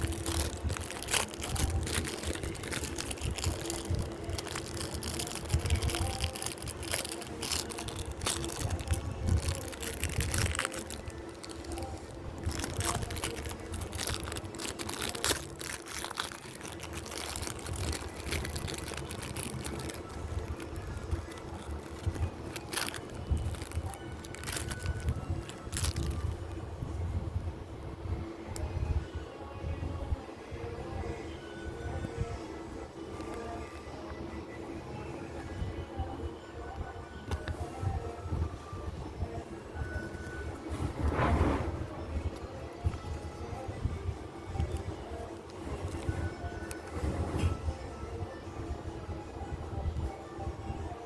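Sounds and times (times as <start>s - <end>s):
packaging crinkling and clicking: 0.0s - 26.6s, 33.2s - 33.6s, 44.5s - 47.6s.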